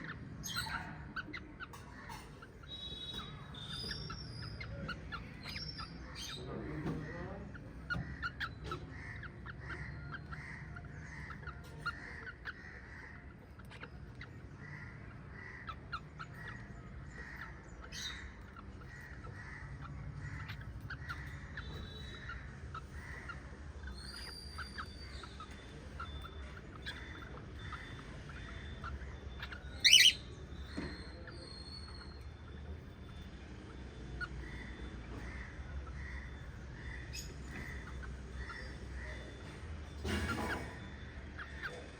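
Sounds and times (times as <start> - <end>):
parrots chirping: 0.0 - 41.9
shrill parrot call: 17.2 - 41.9.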